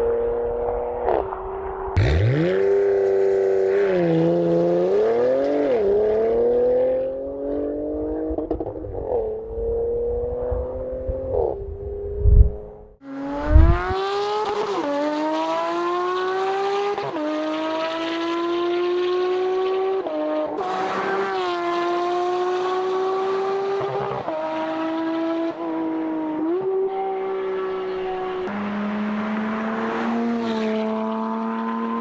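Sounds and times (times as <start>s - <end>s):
sports car engine revving: 2.0s - 19.9s.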